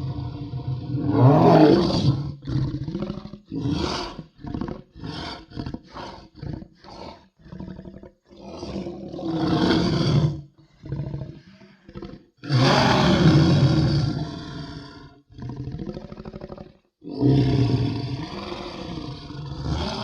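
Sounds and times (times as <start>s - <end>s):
creature roaring: 0.0s - 7.6s, 8.4s - 20.0s.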